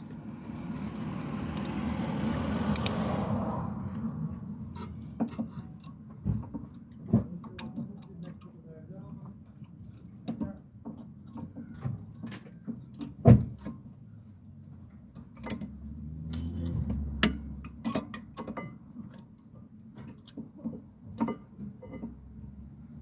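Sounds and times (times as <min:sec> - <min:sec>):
tools clicking and knocking: 0:00.8 - 0:01.9, 0:02.7 - 0:03.2, 0:04.4 - 0:08.6, 0:15.3 - 0:22.6.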